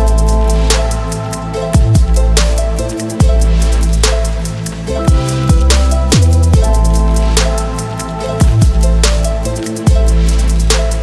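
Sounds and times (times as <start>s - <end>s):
electronic music with drum beat: 0.0s - 11.0s.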